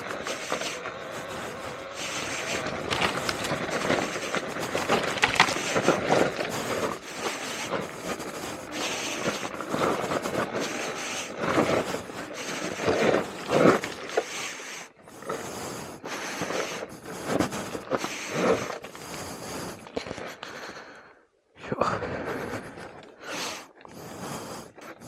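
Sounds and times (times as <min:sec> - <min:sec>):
dirt bike tyres rumbling over rocks: 0:00.0 - 0:14.3.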